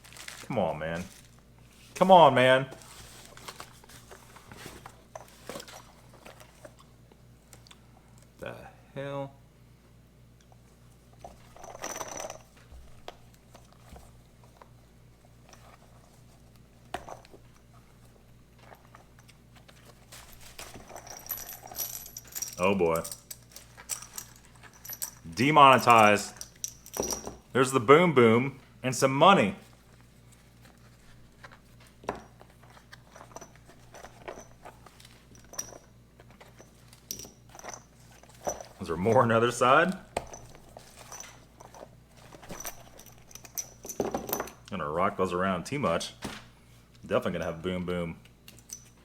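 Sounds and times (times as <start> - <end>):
packaging rustle: 0.0 - 2.0
low steady hum: 0.0 - 49.0.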